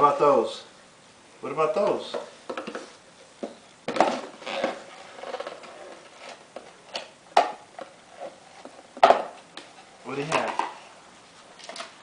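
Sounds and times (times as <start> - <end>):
small toys clattering: 3.9 - 6.4, 10.2 - 10.8.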